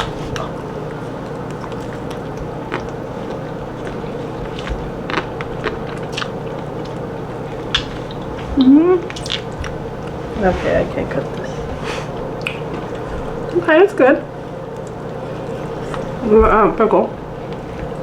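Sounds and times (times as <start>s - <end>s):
person chewing food: 0.0s - 10.4s, 14.4s - 16.2s
steady low hum: 0.0s - 18.0s.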